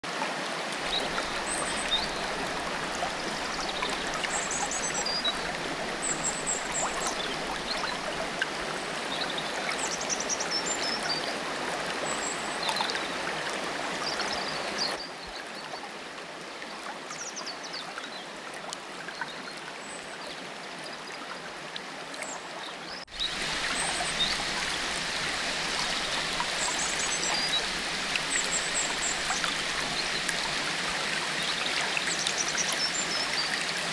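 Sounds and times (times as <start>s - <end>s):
stream rushing: 0.0s - 15.1s, 23.1s - 33.9s
songbirds chirping: 0.8s - 11.4s.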